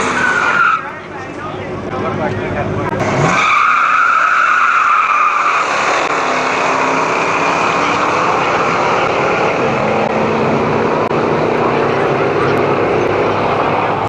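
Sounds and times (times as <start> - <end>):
engine running hard: 0.0 - 14.0
supercharger whine: 5.4 - 14.0.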